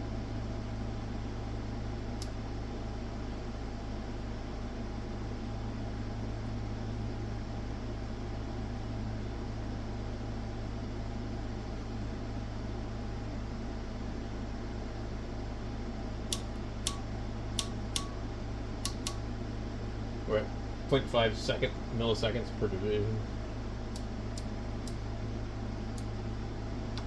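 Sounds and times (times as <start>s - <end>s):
fan whir: 0.0s - 27.0s
low electrical hum: 0.0s - 27.0s
rotary knob clicking: 18.8s - 19.2s.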